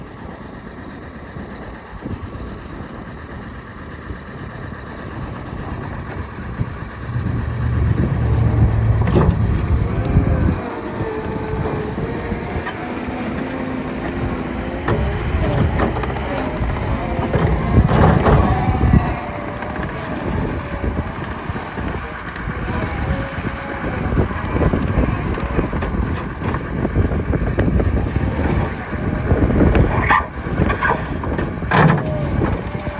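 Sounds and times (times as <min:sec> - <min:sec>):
skid steer loader diesel engine: 0:00.0 - 0:32.9.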